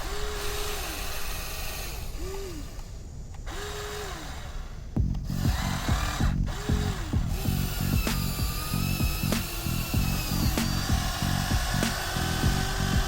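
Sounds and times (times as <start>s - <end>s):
small electric motor whining: 0.0s - 13.0s
low pulsing rumble: 5.0s - 13.0s.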